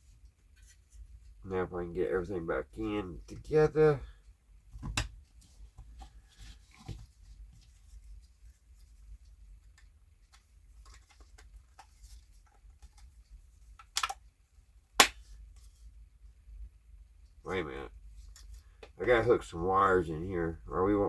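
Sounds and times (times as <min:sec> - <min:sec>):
plastic parts clicking and rustling: 0:09.6 - 0:14.3
sharp plastic click: 0:13.8 - 0:14.2.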